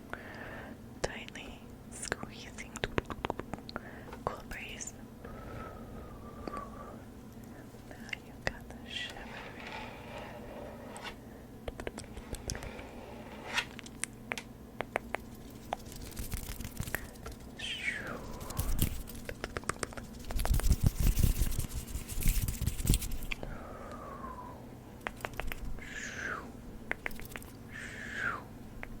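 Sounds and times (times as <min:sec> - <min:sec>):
scratching: 0:08.4 - 0:14.4, 0:15.0 - 0:23.4
crisp clicks and taps: 0:11.7 - 0:12.7, 0:13.8 - 0:17.5, 0:18.8 - 0:20.6, 0:25.0 - 0:25.7.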